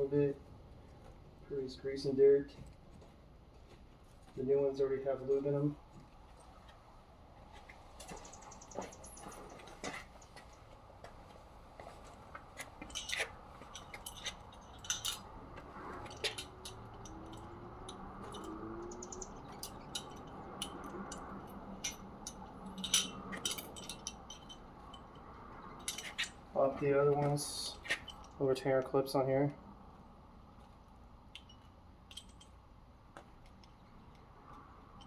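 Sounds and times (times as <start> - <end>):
light metallic clicks and clinks: 8.0 - 10.3, 12.6 - 26.5, 27.1 - 29.6, 30.6 - 35.0.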